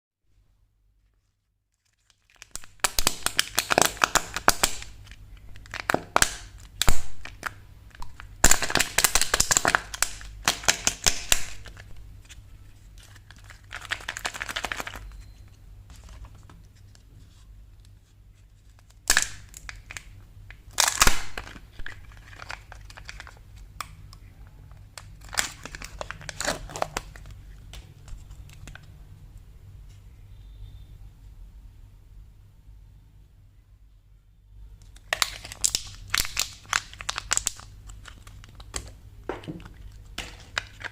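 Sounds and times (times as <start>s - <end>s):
candy wrappers tearing and crinkling: 1.7s - 15.2s, 18.6s - 23.9s, 24.7s - 28.9s, 34.8s - 40.9s.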